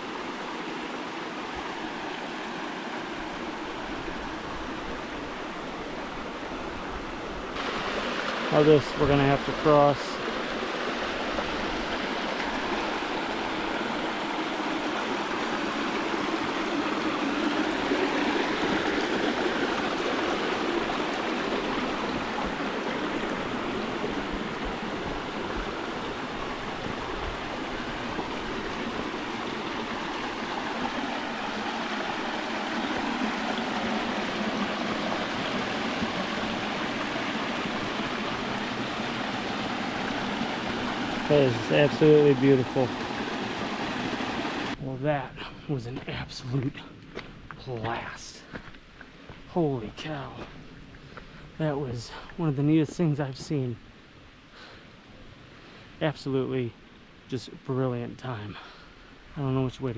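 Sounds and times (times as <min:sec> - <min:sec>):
creek water rushing over rocks: 0:00.0 - 0:45.3.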